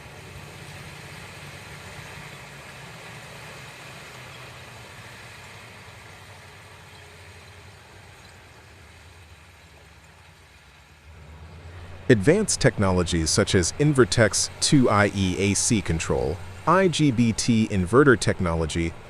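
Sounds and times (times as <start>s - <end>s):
heavy vehicle engine running: 11.0s - 19.0s.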